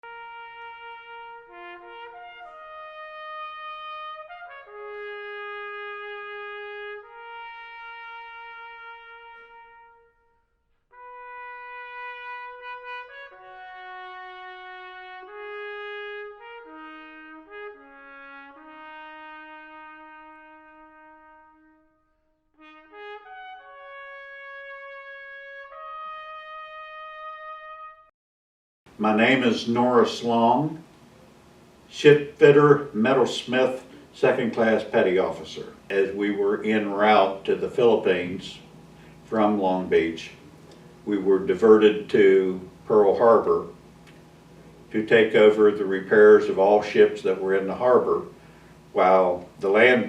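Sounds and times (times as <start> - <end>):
slow brass solo melody: 0.0 - 28.1.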